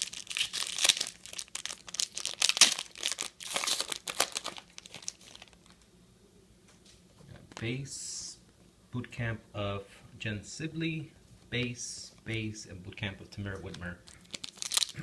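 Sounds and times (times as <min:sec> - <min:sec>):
card pack wrapper crinkling and tearing: 0:00.0 - 0:05.8, 0:13.7 - 0:15.0.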